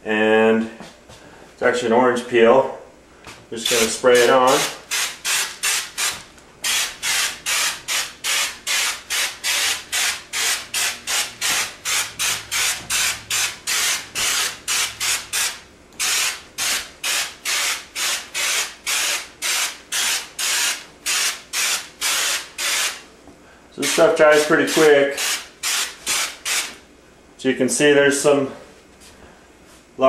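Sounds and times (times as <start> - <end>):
texture sprayer hissing bursts: 3.7 - 23.0, 23.8 - 26.8.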